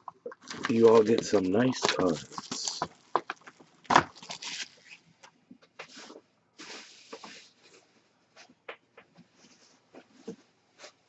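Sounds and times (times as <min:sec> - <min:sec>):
packaging rustling and crinkling: 0:00.0 - 0:08.0.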